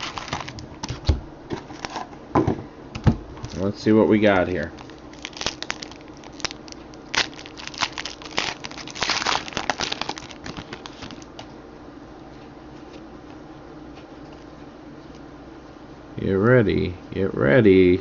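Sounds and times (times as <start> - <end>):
card packaging crinkling: 0.0 - 1.0, 3.4 - 3.8, 4.6 - 11.5
faint room hum: 0.0 - 18.0.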